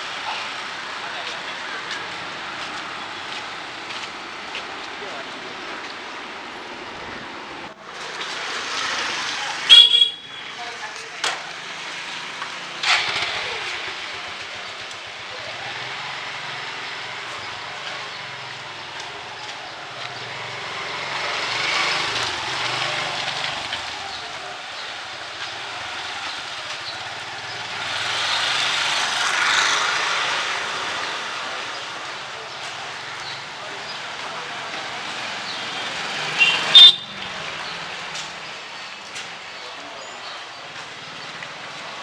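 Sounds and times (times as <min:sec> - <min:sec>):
vehicles passing: 0:00.0 - 0:42.0
rain on wet road: 0:08.0 - 0:10.1, 0:10.9 - 0:15.2, 0:15.8 - 0:24.2, 0:24.9 - 0:39.5.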